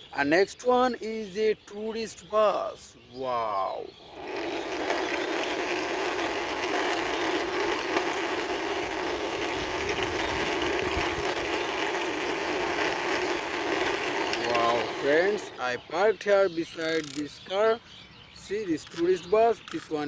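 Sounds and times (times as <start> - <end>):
toy wheels rolling rattle: 4.0 - 15.8, 16.7 - 17.3.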